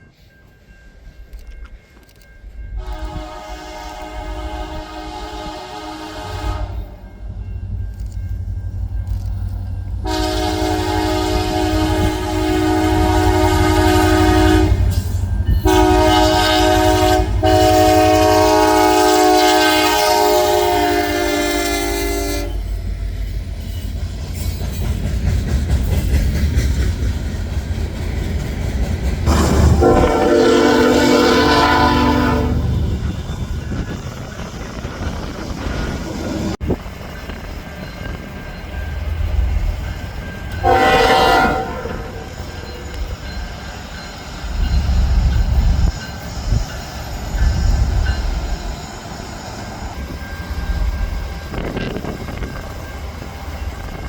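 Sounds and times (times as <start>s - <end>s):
train rumbling: 0.0s - 54.0s
train horn blasts: 2.8s - 7.0s, 10.0s - 15.0s, 15.6s - 22.7s, 29.3s - 33.1s, 40.5s - 42.7s.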